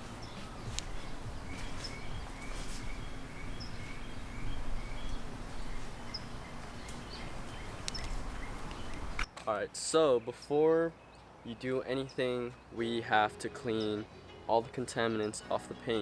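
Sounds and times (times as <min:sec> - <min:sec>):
steady low rumble: 0:00.0 - 0:09.2
bird chirping: 0:00.0 - 0:09.4, 0:10.1 - 0:16.0.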